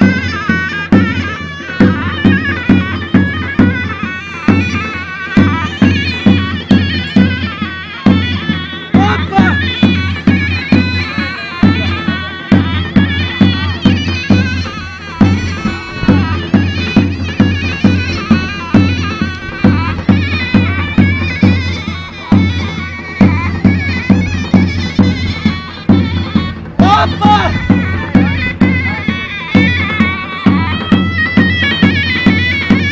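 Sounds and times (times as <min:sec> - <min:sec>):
shrill reed-pipe melody: 0:00.0 - 0:32.9.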